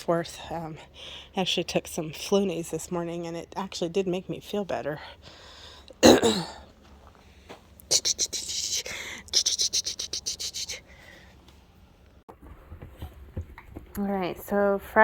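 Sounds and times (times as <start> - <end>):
woman sneezing: 6.0 - 6.6, 7.9 - 10.6.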